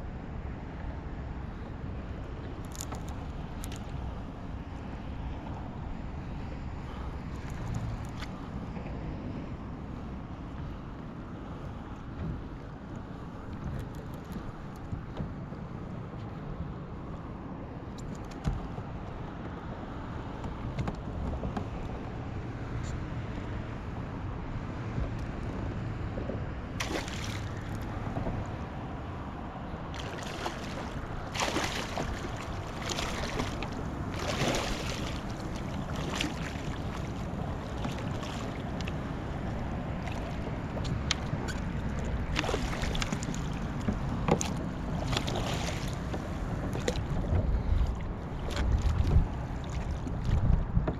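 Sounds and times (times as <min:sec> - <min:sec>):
water sloshing around kayak: 0:02.4 - 0:05.7, 0:26.6 - 0:50.9
wind on microphone: 0:20.4 - 0:50.9
splashes and knocks on hull: 0:26.8 - 0:28.5, 0:29.9 - 0:50.9.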